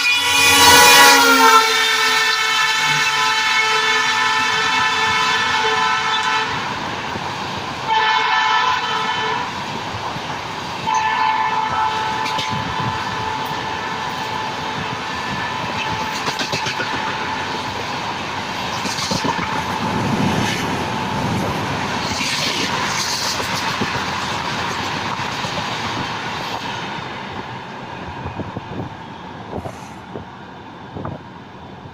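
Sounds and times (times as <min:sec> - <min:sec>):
train horn: 0:00.0 - 0:06.7, 0:07.9 - 0:09.6, 0:10.9 - 0:17.6
train running with wheel clatter: 0:00.0 - 0:31.9.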